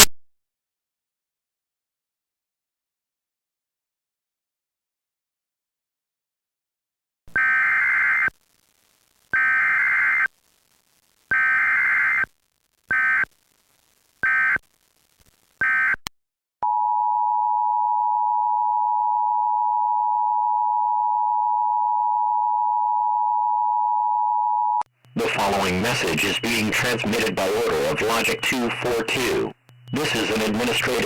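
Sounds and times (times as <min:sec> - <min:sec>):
two-tone attention signal: 0:16.6 - 0:31.0
data bursts: 0:25.1 - 0:31.0.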